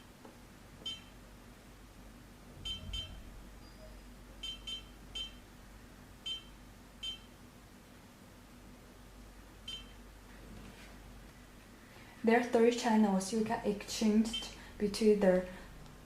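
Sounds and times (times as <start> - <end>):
short high beeps: 9.7 - 10.0.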